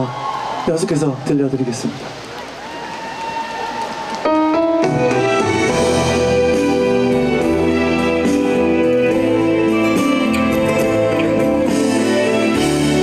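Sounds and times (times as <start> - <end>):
piano notes: 4.3 - 13.0
sustained keyboard chords: 4.3 - 13.0.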